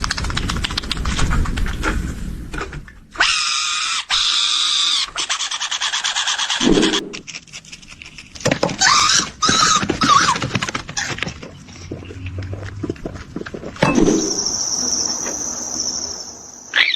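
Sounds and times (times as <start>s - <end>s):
animal squealing high-pitched: 3.2s - 7.2s, 8.8s - 10.4s, 13.8s - 16.9s.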